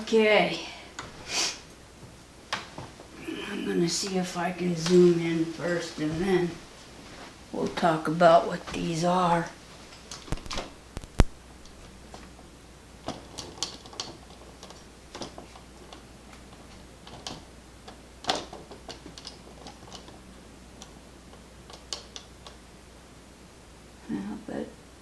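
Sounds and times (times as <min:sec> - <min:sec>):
small objects clicking and tapping: 0:10.0 - 0:12.3, 0:13.0 - 0:20.2, 0:20.8 - 0:22.6.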